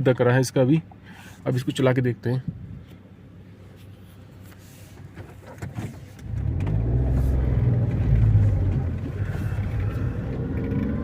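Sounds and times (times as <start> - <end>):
car engine running: 5.0 - 11.0.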